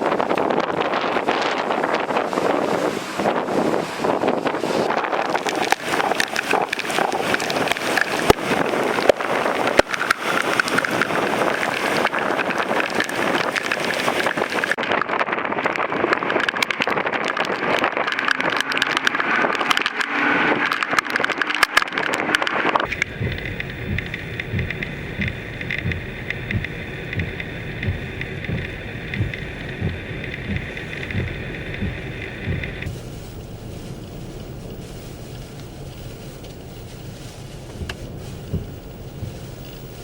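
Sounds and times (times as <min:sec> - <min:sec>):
wind buffeting microphone: 0:00.0 - 0:40.0
sharp crackles and taps: 0:04.8 - 0:40.0.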